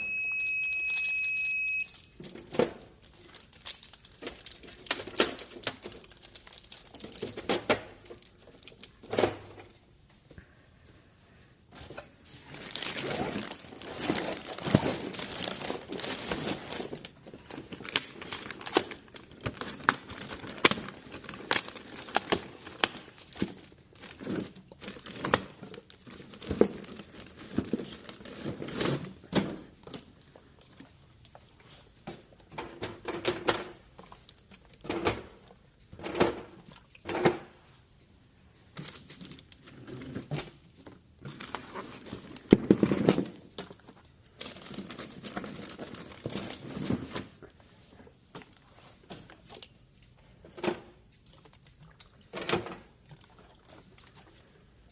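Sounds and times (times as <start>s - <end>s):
plastic packaging crinkling: 2.8s - 9.1s, 12.3s - 31.8s, 40.8s - 49.8s.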